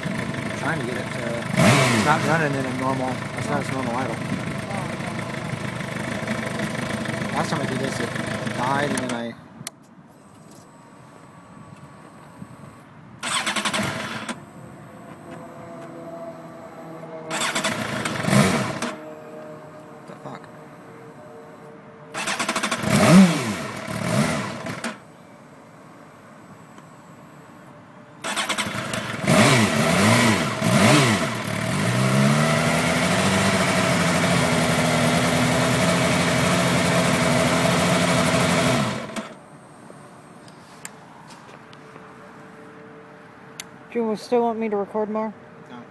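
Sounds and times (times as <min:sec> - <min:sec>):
motorcycle engine idling unevenly: 0:00.0 - 0:09.0
electric starter cranking: 0:00.0 - 0:09.2, 0:13.2 - 0:16.0, 0:17.3 - 0:19.1, 0:22.2 - 0:25.0, 0:28.2 - 0:39.4
motorcycle engine revving and idling: 0:00.0 - 0:09.2, 0:13.2 - 0:25.1, 0:28.2 - 0:39.4.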